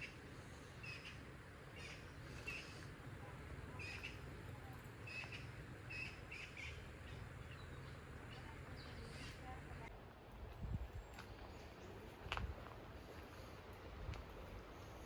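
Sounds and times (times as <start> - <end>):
bird chirping: 0.0 - 3.0, 3.7 - 9.8.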